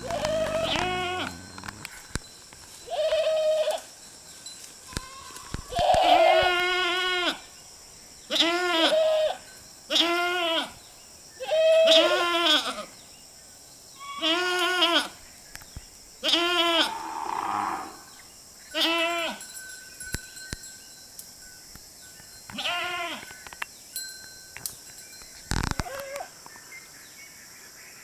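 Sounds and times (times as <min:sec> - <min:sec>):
goats bleating: 0:00.0 - 0:01.9.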